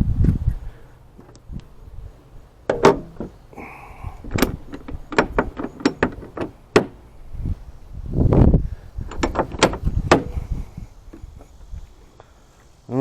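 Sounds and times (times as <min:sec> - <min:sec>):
metal hood latch clicks and clunks: 0:02.6 - 0:03.5, 0:04.2 - 0:07.4, 0:09.0 - 0:11.5.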